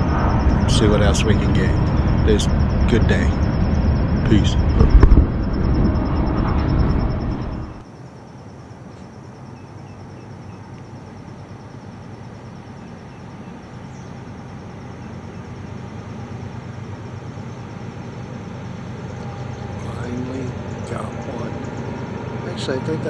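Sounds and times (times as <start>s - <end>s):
distant traffic rumble: 0.0s - 23.0s
faint high bird chirps: 6.0s - 23.0s.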